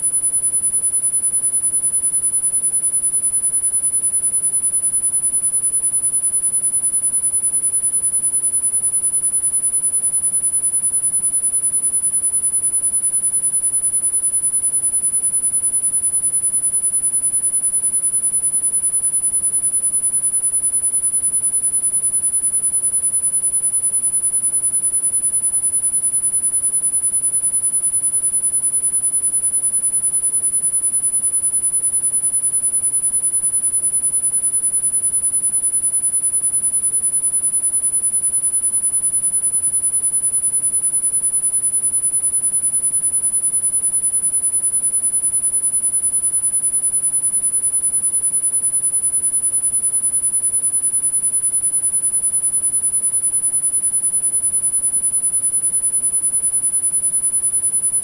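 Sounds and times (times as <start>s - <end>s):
high-pitched sine tone: 0.0s - 58.0s.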